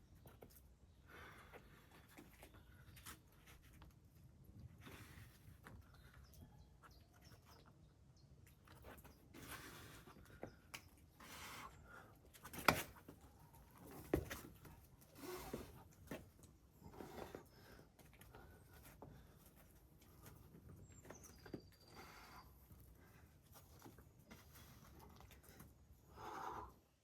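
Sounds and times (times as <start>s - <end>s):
climbing shoes scuffing on rock: 13.8s - 16.3s.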